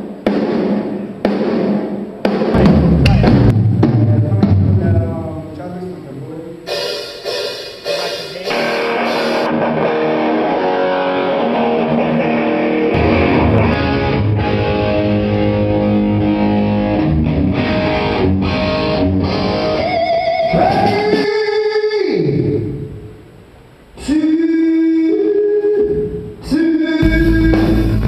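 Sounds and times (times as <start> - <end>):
bass guitar: 2.6 - 5.4, 8.3 - 20.8, 27.0 - 28.0
electric guitar chords strummed: 6.6 - 20.6, 27.0 - 28.0.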